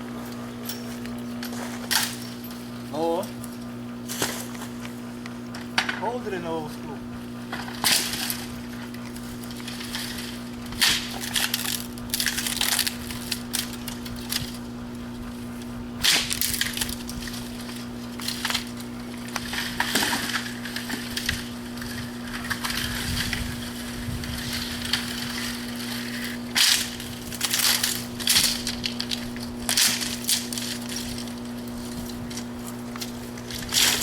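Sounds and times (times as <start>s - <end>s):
low hum: 0.0s - 34.0s
dry branches cracking: 7.5s - 34.0s.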